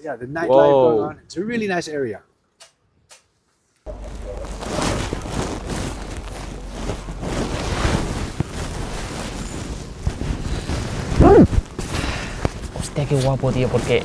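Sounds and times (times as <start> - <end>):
steady low hum: 3.9 - 14.0
wind buffeting microphone: 3.9 - 14.0.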